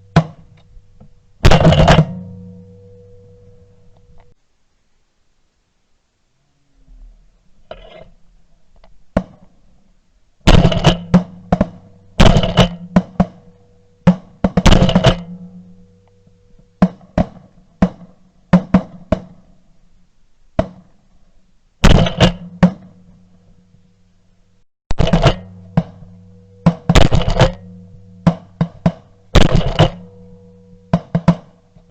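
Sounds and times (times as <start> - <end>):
low bass and guitar notes: 0.0 - 4.4, 10.5 - 16.8, 24.9 - 31.9
heavy drum hits: 1.4 - 2.8, 10.5 - 15.9, 21.8 - 23.1, 24.9 - 31.9.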